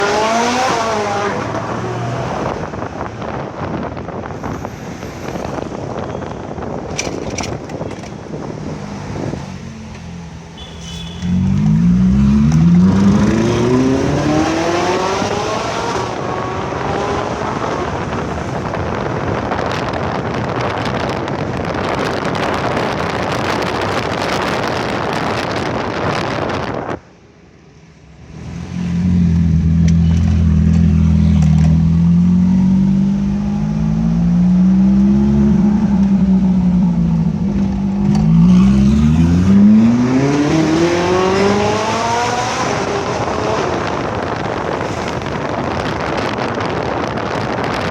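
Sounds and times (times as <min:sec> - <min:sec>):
car engine revving: 0:00.0 - 0:03.8, 0:08.2 - 0:19.1, 0:28.3 - 0:47.8.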